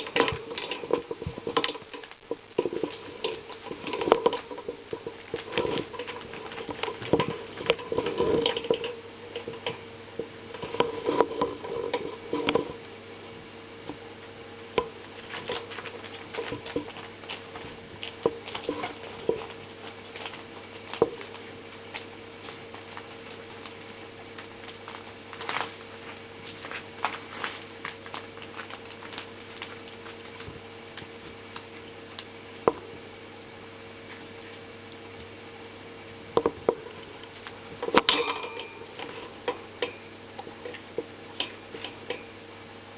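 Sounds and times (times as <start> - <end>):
puppy claws pattering and scrabbling: 0.0 - 12.8, 14.8 - 32.8
steady low hum: 0.0 - 42.9.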